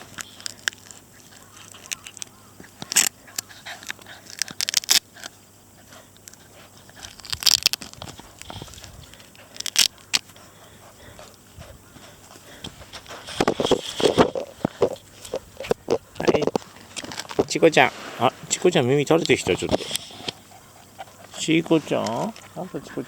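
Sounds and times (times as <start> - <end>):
puppies scuffling at play: 10.2 - 23.0.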